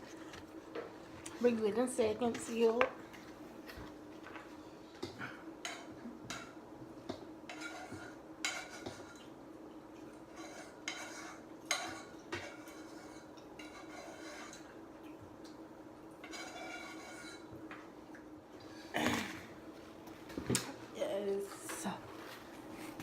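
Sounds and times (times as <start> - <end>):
faint steady hum: 0.0 - 23.0
metal utensil scraping a pot: 7.5 - 9.2, 10.3 - 14.7, 16.2 - 17.5.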